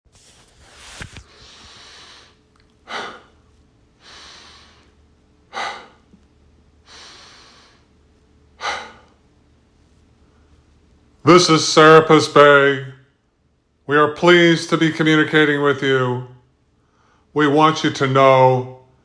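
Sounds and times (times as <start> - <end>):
person breathing deeply: 1.3 - 3.4, 4.0 - 6.1, 6.8 - 7.9, 8.6 - 9.2.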